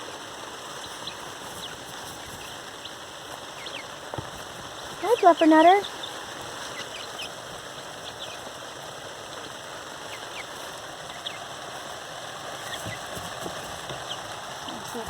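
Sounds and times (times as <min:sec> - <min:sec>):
chicks peeping: 0:00.0 - 0:15.0
steady rain falling: 0:00.0 - 0:15.0.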